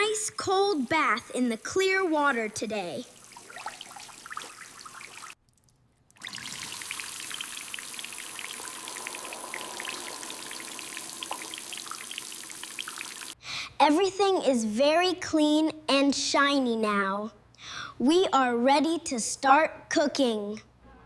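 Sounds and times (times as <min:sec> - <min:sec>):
water running in a sink: 0:00.5 - 0:05.4, 0:06.2 - 0:13.4
droplets pattering: 0:00.8 - 0:13.4.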